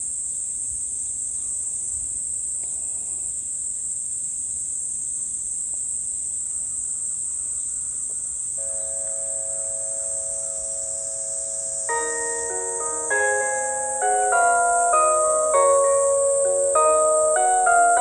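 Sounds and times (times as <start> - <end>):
high-pitched insect drone: 8.6 - 18.0
loudspeaker chime tones: 8.6 - 18.0.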